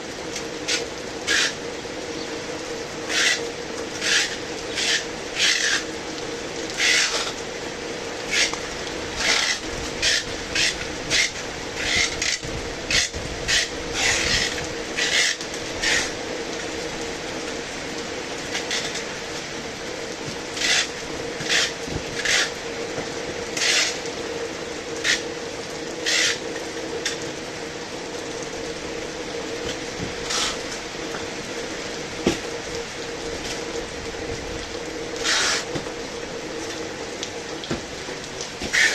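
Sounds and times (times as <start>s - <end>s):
faint steady hum: 0.0s - 38.9s
heavy rain falling: 0.0s - 38.9s.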